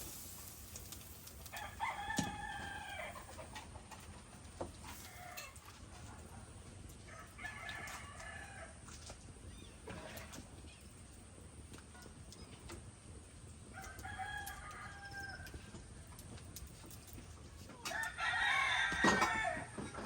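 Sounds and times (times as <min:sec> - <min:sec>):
rooster crowing: 0:01.5 - 0:03.3, 0:13.8 - 0:15.6, 0:17.9 - 0:20.0
short faint rooster calls: 0:01.5 - 0:03.4.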